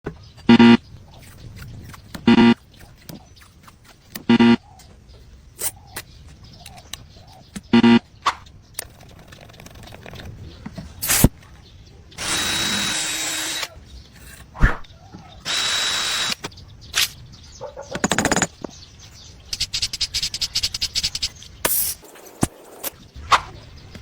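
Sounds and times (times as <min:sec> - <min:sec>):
rapid scraping strokes: 0:01.1 - 0:04.6, 0:12.2 - 0:14.6
power drill whining: 0:12.2 - 0:14.4, 0:15.4 - 0:16.4.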